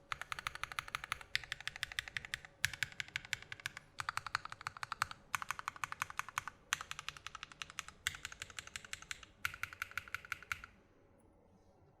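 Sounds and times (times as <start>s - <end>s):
mechanical keyboard typing: 0.0s - 10.8s.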